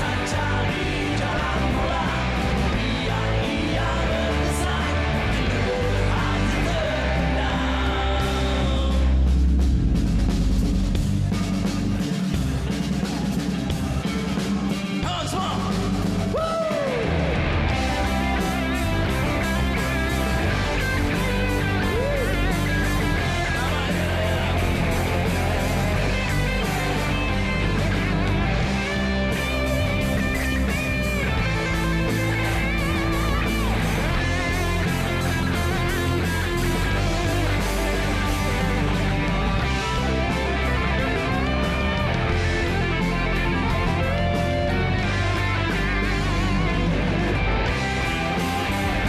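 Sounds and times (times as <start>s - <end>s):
person singing: 0.0s - 9.3s, 21.7s - 27.3s
electric guitar: 0.0s - 15.1s, 15.7s - 49.0s
heavy bass line: 0.0s - 49.0s
live rock band playing: 0.0s - 49.0s.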